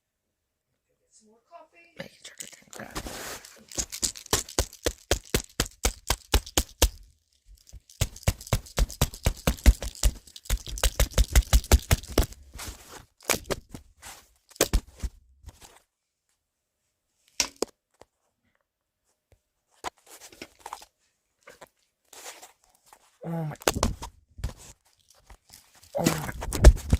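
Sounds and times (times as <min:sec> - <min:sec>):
rapid sharp clicks: 0:03.7 - 0:07.0.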